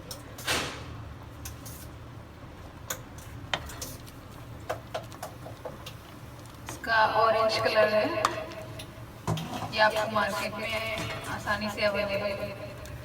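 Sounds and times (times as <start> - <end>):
low steady hum: 6.7 - 13.0.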